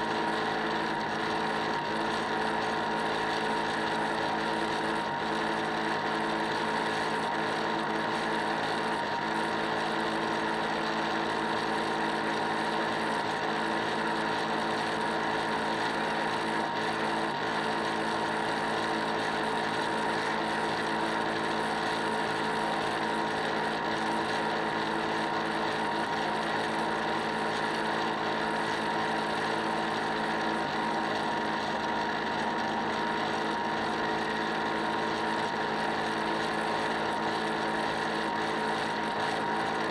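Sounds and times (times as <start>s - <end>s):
model boat motor whining: 0.0s - 39.9s.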